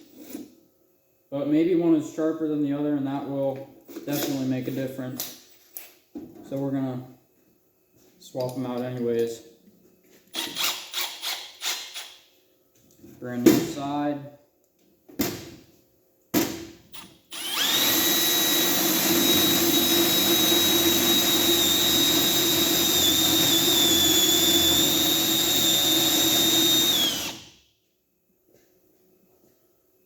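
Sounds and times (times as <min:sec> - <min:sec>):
drills boring into wood: 0:10.4 - 0:12.0, 0:17.0 - 0:27.6.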